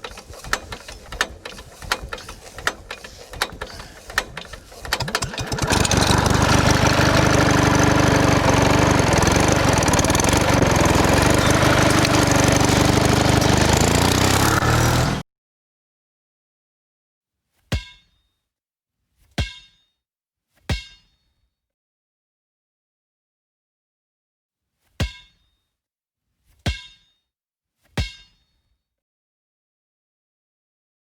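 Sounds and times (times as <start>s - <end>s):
engine-like running noise: 0.0s - 15.2s.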